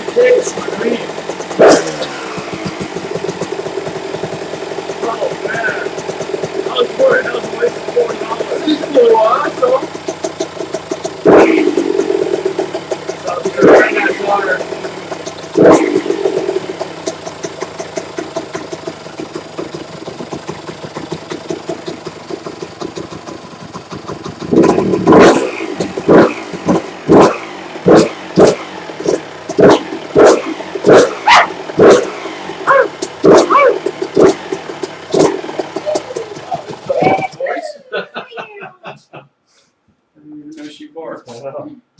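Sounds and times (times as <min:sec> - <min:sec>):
loud sharp bursts: 0:00.0 - 0:18.9, 0:24.4 - 0:35.8
two-stroke engine idling: 0:00.0 - 0:37.7.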